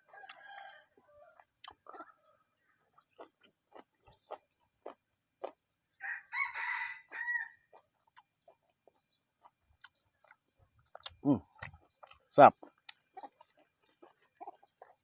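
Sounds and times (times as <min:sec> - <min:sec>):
rooster crowing: 0:00.0 - 0:01.4, 0:06.0 - 0:07.6
mouth clicks of chewing: 0:00.0 - 0:02.2, 0:02.8 - 0:05.7, 0:07.7 - 0:15.0.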